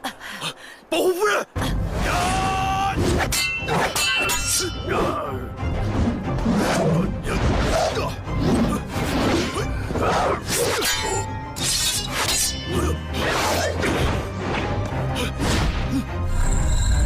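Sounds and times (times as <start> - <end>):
dramatic orchestral music: 1.6 - 17.0.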